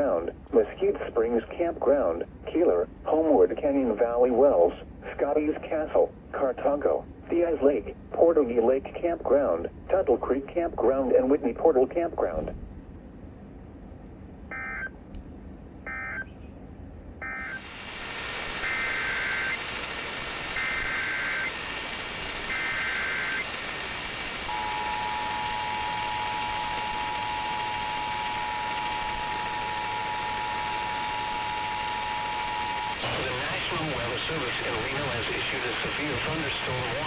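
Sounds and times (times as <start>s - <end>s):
two-tone attention signal: 24.5s - 33.0s.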